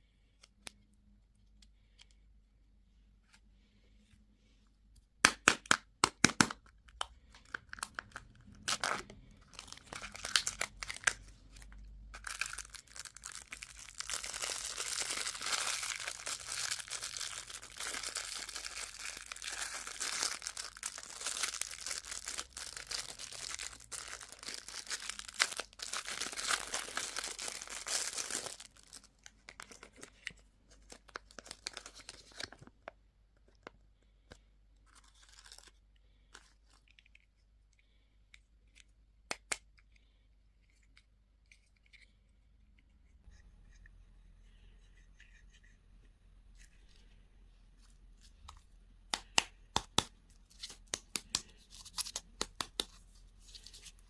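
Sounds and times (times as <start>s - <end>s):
candy wrapper crinkling and tearing: 5.6s - 34.1s, 34.8s - 37.4s, 49.1s - 54.0s.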